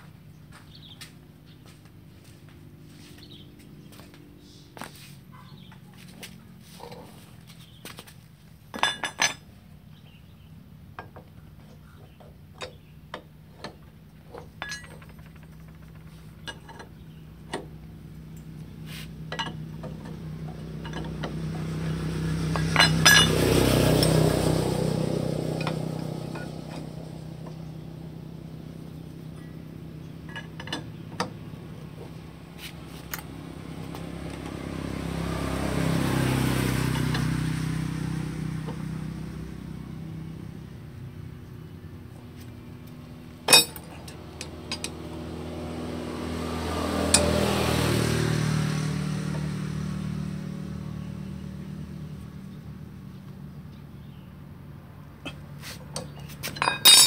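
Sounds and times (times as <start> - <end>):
passing vehicle engine: 0.0 - 57.0
metal tools clinking: 8.7 - 9.5, 13.6 - 17.7, 19.3 - 21.5, 22.5 - 24.3, 25.6 - 26.9, 30.2 - 31.4, 43.4 - 45.0, 55.8 - 57.0.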